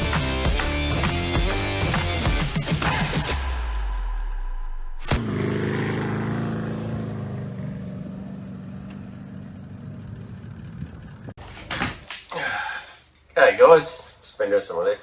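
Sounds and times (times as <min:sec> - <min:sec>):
vehicle engine humming: 0:04.9 - 0:11.4
sharp click: 0:05.0 - 0:05.2.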